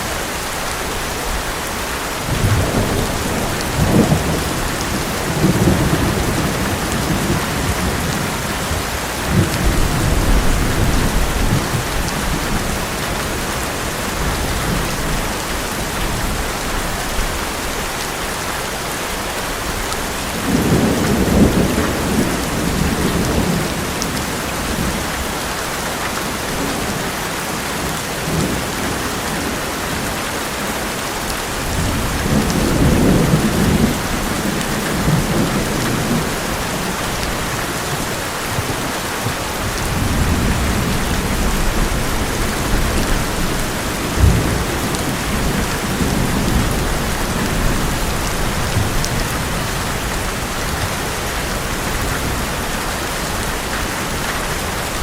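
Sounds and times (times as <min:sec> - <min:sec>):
heavy rain on a metal roof: 0:00.0 - 0:55.0
low rolling thunder: 0:02.2 - 0:12.8, 0:20.3 - 0:25.1, 0:31.6 - 0:52.5.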